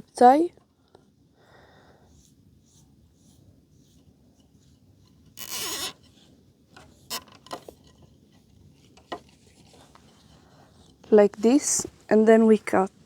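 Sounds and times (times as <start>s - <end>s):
zip tie zipping tight: 5.4s - 6.0s.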